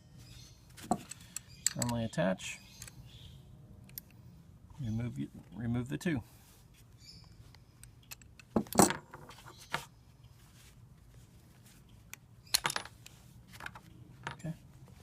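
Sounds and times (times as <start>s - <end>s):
metal tools clinking: 0.9s - 3.0s, 14.2s - 14.6s.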